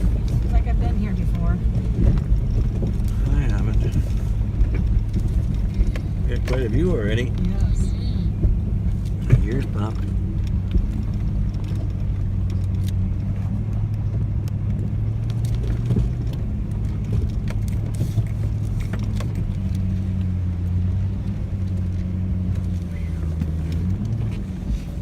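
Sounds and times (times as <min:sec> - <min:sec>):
rattles and knocks: 0:00.0 - 0:07.6
off-road vehicle engine running: 0:00.0 - 0:25.0.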